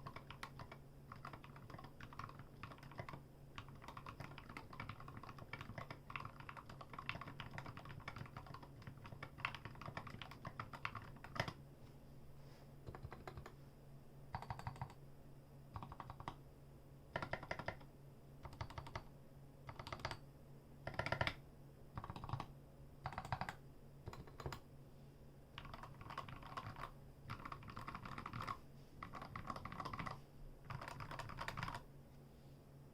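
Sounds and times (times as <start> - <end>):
mechanical keyboard typing: 0.0 - 11.6, 12.8 - 13.6, 14.3 - 15.0, 15.8 - 16.4, 17.1 - 19.1, 19.7 - 20.2, 20.8 - 21.4, 22.0 - 24.6, 25.6 - 31.8.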